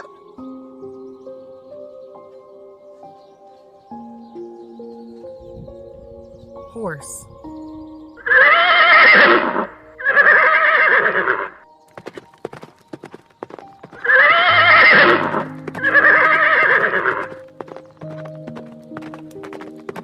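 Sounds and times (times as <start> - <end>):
horse whinnying: 8.2 - 11.5, 14.0 - 17.3.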